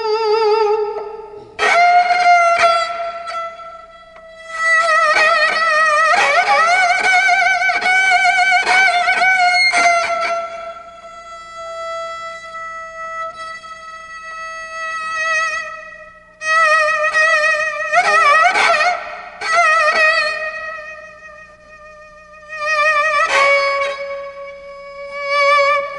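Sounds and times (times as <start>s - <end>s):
bowed string instrument melody: 0.0s - 25.9s.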